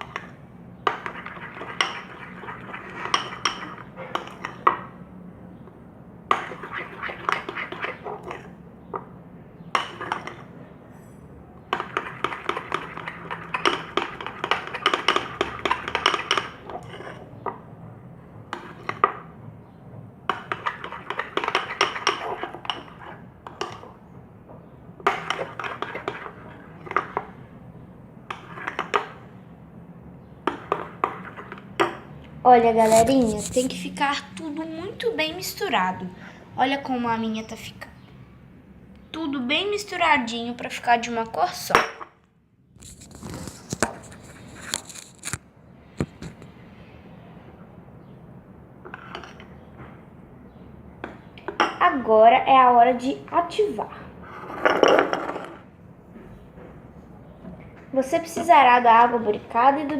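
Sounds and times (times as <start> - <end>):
spoon stirring thick slime: 0.0 - 4.6, 6.3 - 8.6, 11.7 - 17.4, 20.3 - 24.0, 25.1 - 27.3, 32.8 - 34.6, 42.8 - 45.4, 46.0 - 46.5.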